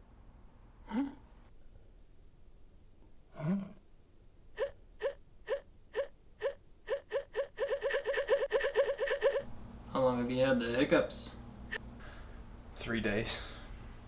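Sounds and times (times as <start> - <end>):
man hiccuping: 0.9 - 1.2, 3.3 - 3.8.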